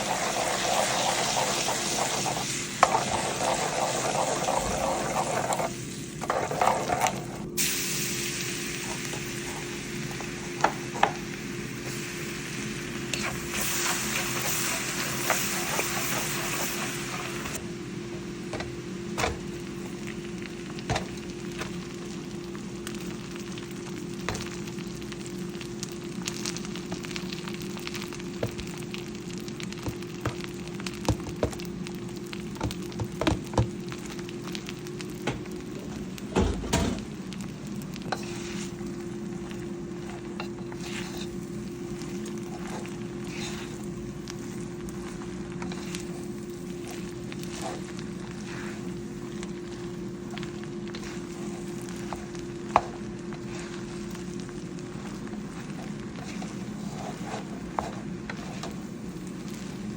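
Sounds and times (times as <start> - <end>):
food sizzling in a pan: 0.0 - 59.9
utensil scraping a pan: 40.4 - 41.4, 56.2 - 58.8.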